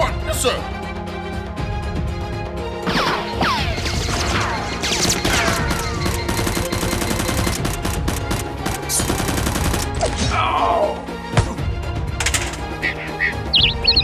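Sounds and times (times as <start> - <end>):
background music: 0.0 - 14.0
rapid gunfire: 5.3 - 10.0.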